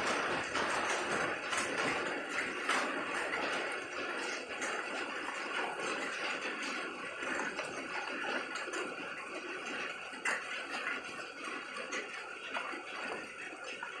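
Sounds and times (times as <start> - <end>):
drops ticking on hard surfaces: 0.0 - 7.7.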